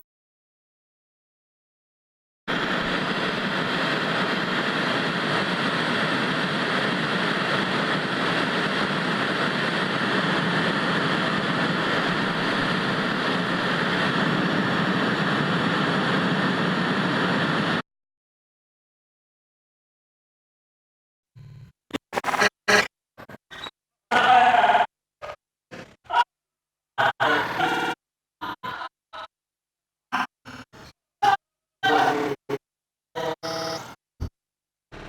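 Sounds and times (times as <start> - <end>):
television static hiss: 2.5 - 17.8.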